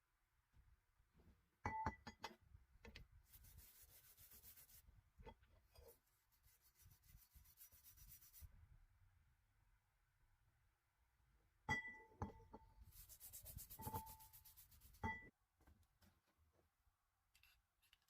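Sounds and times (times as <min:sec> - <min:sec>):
faint hand-rubbing strokes: 0:03.2 - 0:04.9, 0:05.6 - 0:08.6, 0:12.8 - 0:15.0.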